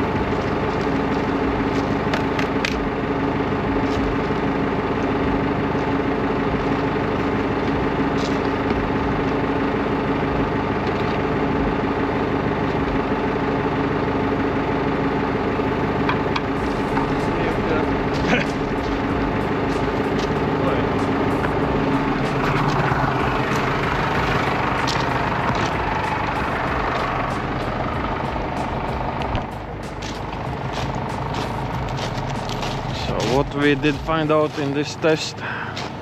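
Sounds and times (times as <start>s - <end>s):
tractor engine under load: 16.6s - 36.0s.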